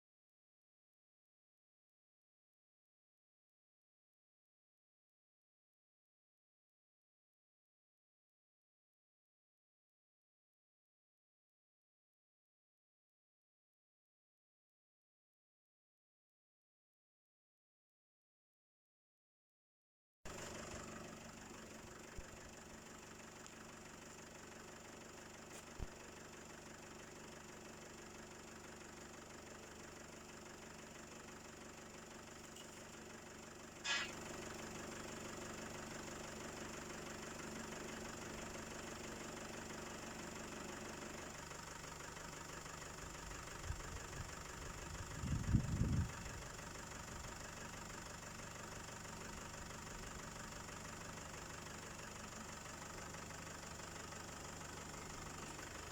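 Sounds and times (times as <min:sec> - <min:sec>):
vehicle engine idling: 0:20.3 - 0:55.9.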